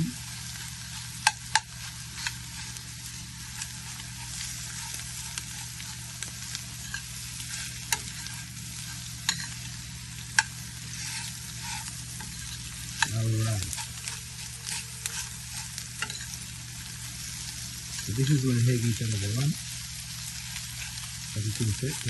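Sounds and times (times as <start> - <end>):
food sizzling in hot oil: 0.0 - 22.0
utensil clicking on pan: 0.8 - 2.7, 9.2 - 9.6, 10.3 - 16.4.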